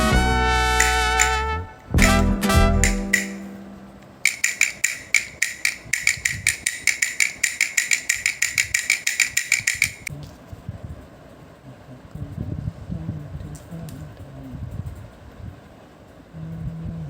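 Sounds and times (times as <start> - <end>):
toy drum rattling: 0.8 - 1.4, 2.0 - 2.2, 2.8 - 3.5, 4.2 - 10.1.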